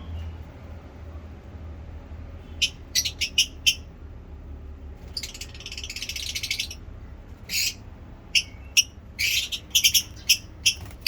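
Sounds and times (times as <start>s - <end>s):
lovebirds chirping: 2.4s - 4.0s, 5.0s - 11.0s.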